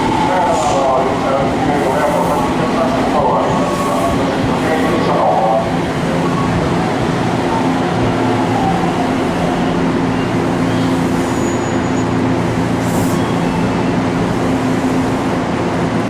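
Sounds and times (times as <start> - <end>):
constant rushing noise: 0.0 - 16.0
electric train humming: 0.0 - 16.0.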